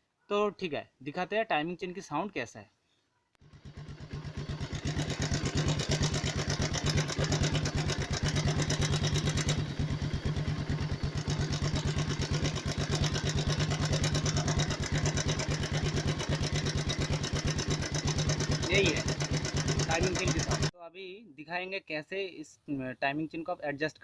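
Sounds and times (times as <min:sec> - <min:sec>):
motorcycle engine idling: 0:03.4 - 0:20.7
timing chain clatter: 0:10.8 - 0:20.7.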